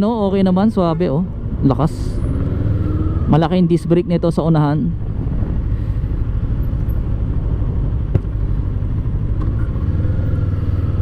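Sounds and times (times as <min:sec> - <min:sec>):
road and wind noise: 0:00.0 - 0:11.0.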